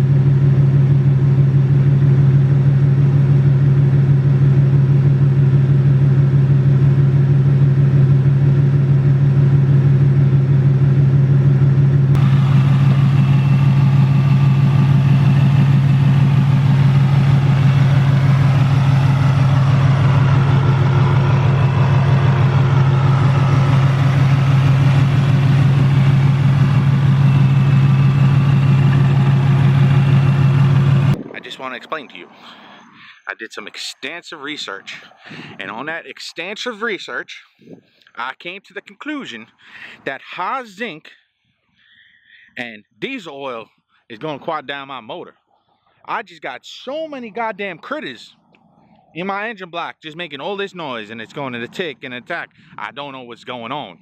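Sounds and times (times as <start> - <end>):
car engine idling: 0.0 - 33.2.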